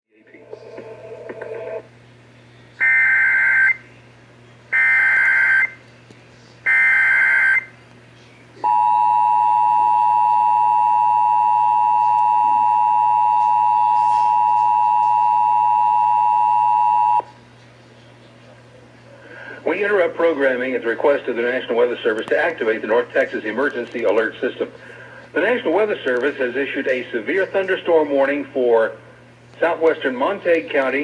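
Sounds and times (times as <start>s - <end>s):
faint low hum: 0.1s - 31.0s
two-tone attention signal: 8.7s - 17.3s.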